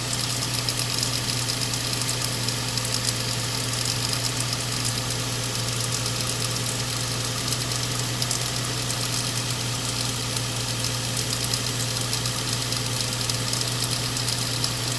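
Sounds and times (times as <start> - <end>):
car engine idling: 0.0 - 14.9
rapid engine ticking: 0.0 - 14.9.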